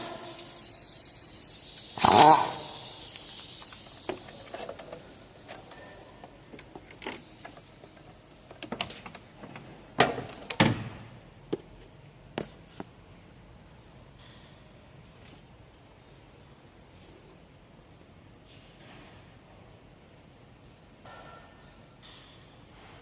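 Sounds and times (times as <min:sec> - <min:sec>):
hand tools clicking and knocking: 0:01.9 - 0:09.2.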